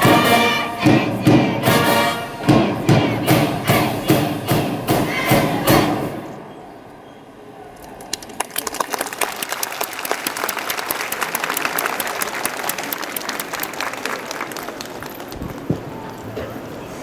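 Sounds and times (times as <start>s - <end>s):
audience applauding: 7.8s - 16.9s.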